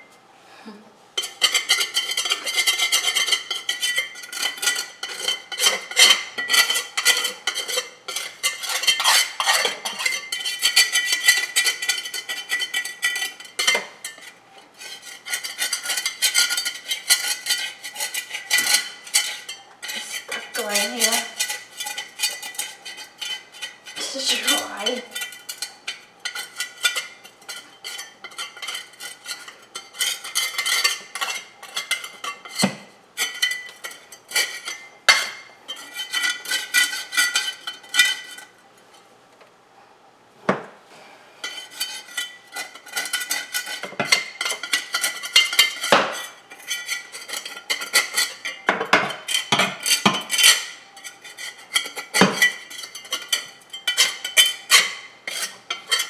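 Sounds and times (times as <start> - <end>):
scraping and clinking on floor: 1.2 - 39.0, 41.4 - 56.0.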